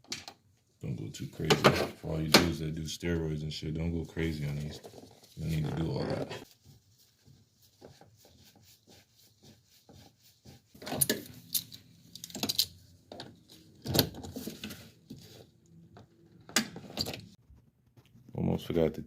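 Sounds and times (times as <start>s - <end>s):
metal tools clinking: 10.8s - 12.8s.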